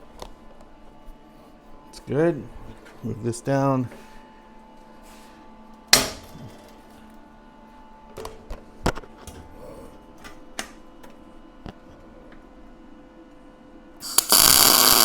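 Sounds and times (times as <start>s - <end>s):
welding burst: 14.0s - 15.0s.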